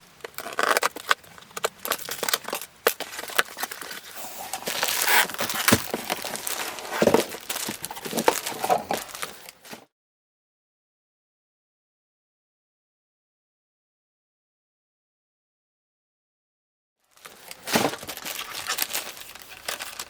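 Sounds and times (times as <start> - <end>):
plastic packaging crinkling: 0.0 - 9.8, 17.1 - 20.0.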